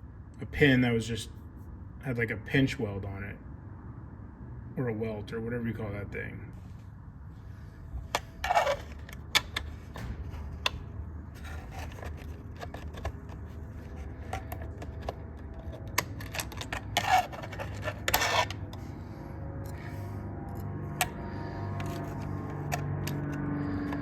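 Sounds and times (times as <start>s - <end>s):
scraping rasps: 7.5s - 24.0s
metal clicks and scrapes: 8.0s - 24.0s.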